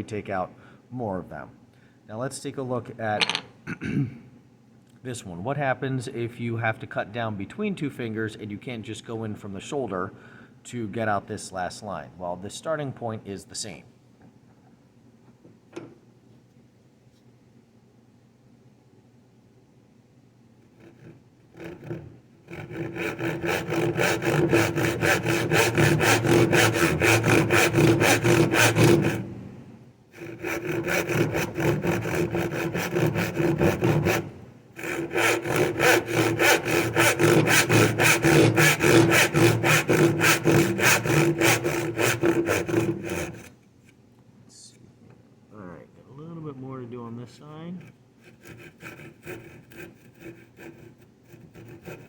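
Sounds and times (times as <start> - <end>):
hand saw cutting wood: 20.7 - 29.4, 30.1 - 43.6, 47.6 - 52.0.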